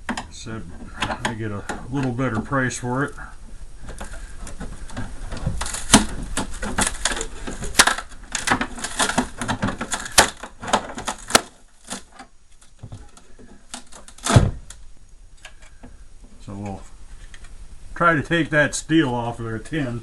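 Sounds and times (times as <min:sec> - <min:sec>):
fridge parts being pried apart: 0:00.0 - 0:02.7, 0:03.8 - 0:14.8.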